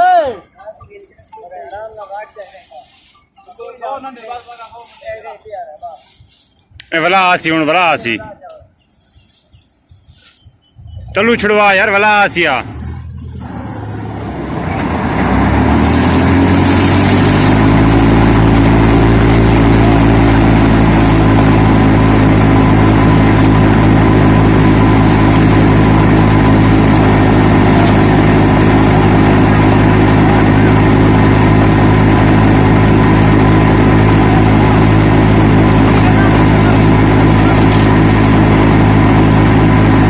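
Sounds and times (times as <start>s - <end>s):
harvester engine running loud: 11.2s - 40.0s.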